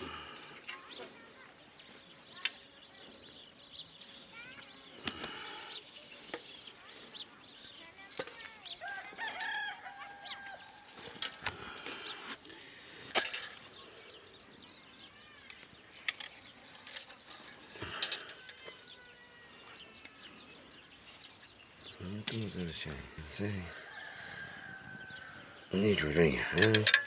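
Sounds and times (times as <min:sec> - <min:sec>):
rooster crowing: 0:08.8 - 0:10.8, 0:23.7 - 0:25.7.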